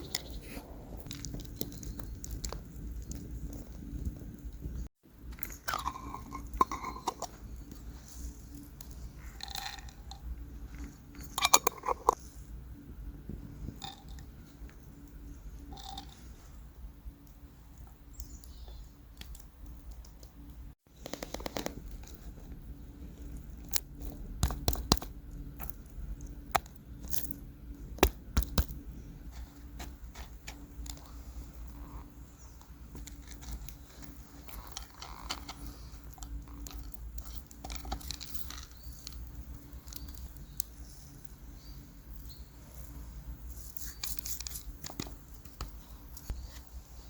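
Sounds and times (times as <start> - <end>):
low steady rumble: 0.0 - 20.8, 21.7 - 47.0.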